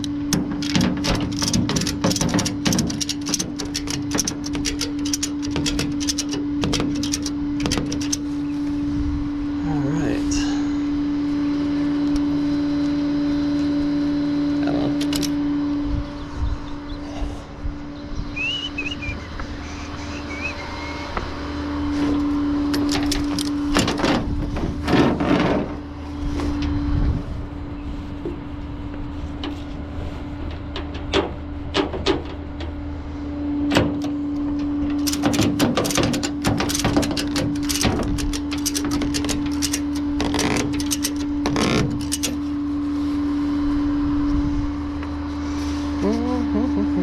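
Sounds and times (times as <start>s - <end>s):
knocks and rattles: 0.0s - 8.4s, 15.0s - 15.4s, 22.7s - 25.9s, 30.4s - 32.8s, 33.7s - 42.5s
vehicle engine droning: 0.0s - 47.0s.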